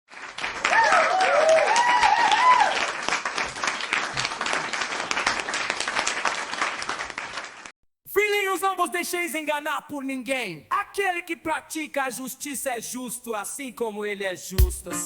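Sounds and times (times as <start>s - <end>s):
crowd applauding: 0.1s - 7.7s
person cheering: 0.7s - 2.8s.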